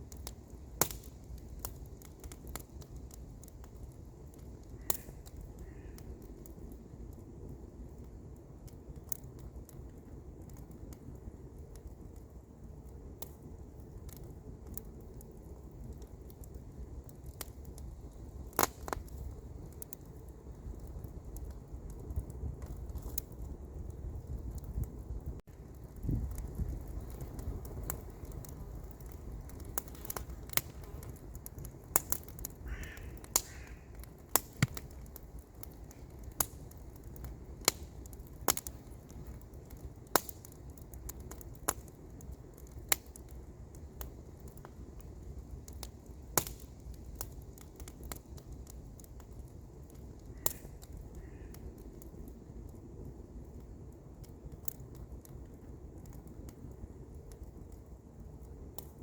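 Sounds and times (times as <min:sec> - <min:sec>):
campfire crackling and popping: 0:00.0 - 0:59.0
bird calling: 0:32.7 - 0:33.9.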